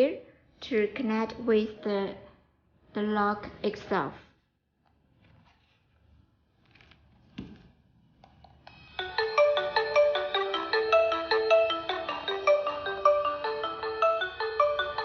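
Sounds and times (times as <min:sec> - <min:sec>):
intercom marimba-like ringing melody: 0:09.0 - 0:15.0.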